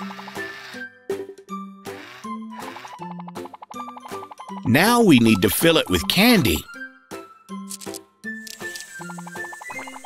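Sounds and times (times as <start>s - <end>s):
cartoon music with pitched notes: 2.4s - 6.7s.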